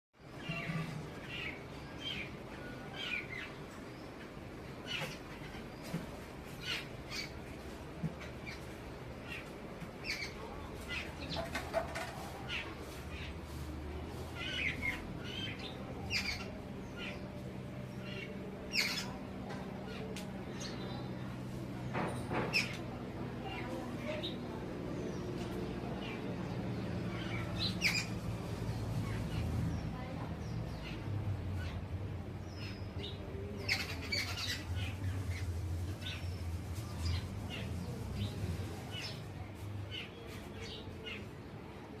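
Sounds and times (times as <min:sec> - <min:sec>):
birds giving harsh calls: 0:08.2 - 0:21.4, 0:22.4 - 0:41.3
birds squawking: 0:27.1 - 0:29.6, 0:33.6 - 0:36.4.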